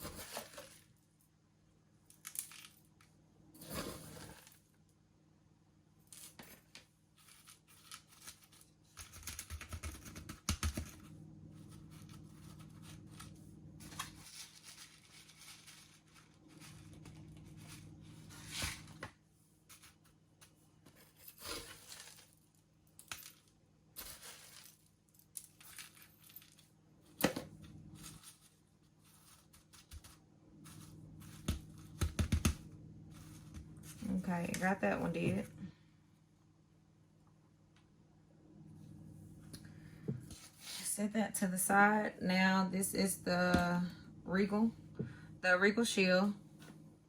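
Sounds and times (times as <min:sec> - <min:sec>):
steady low hum: 0:10.0 - 0:15.0, 0:26.8 - 0:28.3, 0:30.2 - 0:47.0
hands rustling gritty potting mix: 0:11.5 - 0:20.0.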